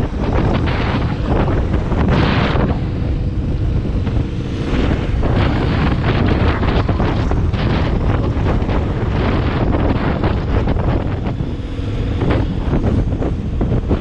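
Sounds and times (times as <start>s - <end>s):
wind buffeting microphone: 0.0s - 14.0s.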